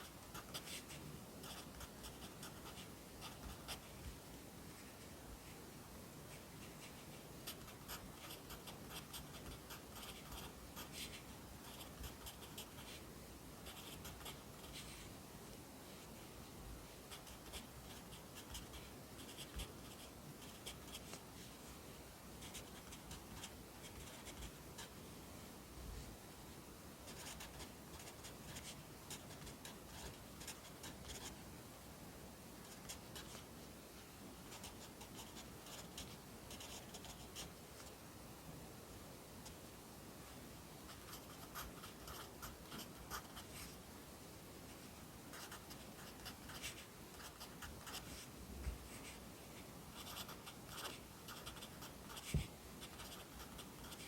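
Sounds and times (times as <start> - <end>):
pencil scratching on paper: 0.0 - 3.8, 6.8 - 13.0, 13.6 - 15.0, 17.1 - 21.2, 22.4 - 24.9, 34.5 - 37.5, 40.9 - 43.8, 45.3 - 48.2, 49.9 - 54.0.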